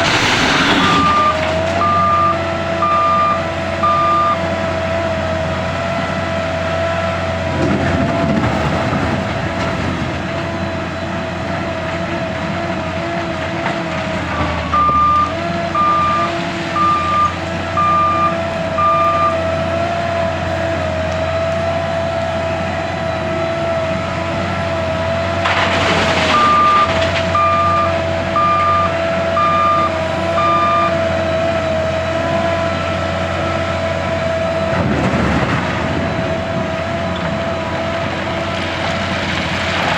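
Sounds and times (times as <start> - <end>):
reversing alarm beeping: 0.0 - 5.7, 14.6 - 22.4, 23.0 - 38.1
diesel engine whining under load: 0.0 - 39.9.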